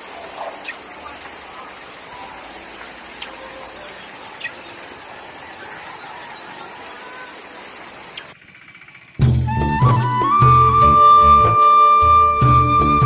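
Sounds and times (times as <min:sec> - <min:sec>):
faint chirps: 0:00.0 - 0:09.2.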